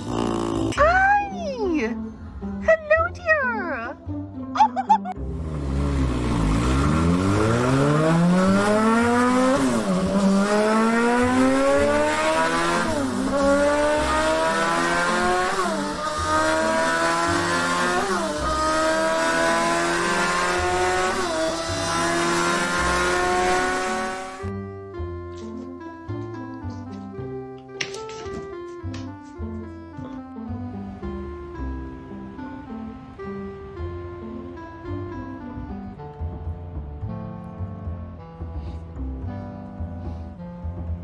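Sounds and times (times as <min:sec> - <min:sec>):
low bass line: 0:00.0 - 0:16.8, 0:29.4 - 0:41.0
car engine accelerating through gears: 0:05.2 - 0:24.5.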